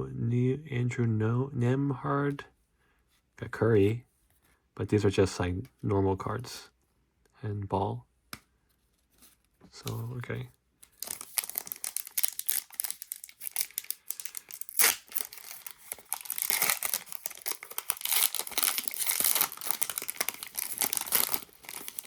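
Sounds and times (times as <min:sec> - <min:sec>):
wrapper tearing and crinkling: 0:10.9 - 0:22.0.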